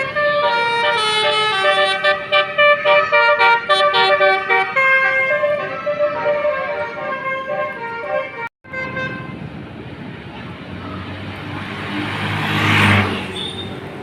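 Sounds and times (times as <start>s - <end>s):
multi-tone bus horn tune: 0.0s - 9.4s
bus engine: 0.0s - 14.0s
road noise: 0.0s - 14.0s.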